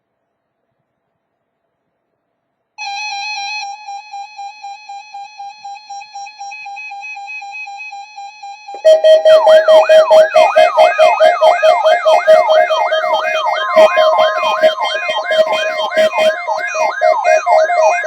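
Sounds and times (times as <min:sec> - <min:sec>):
synthesizer tone pulsing: 0:08.7 - 0:18.0.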